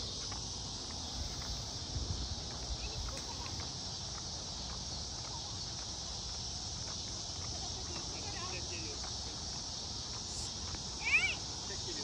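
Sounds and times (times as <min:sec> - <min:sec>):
high-pitched insect chorus: 0:00.0 - 0:12.0.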